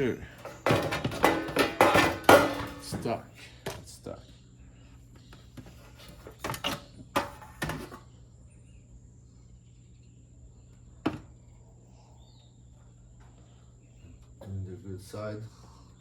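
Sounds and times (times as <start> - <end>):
steady low hum: 0.0 - 16.0
plastic casing parts clattering: 0.4 - 3.8.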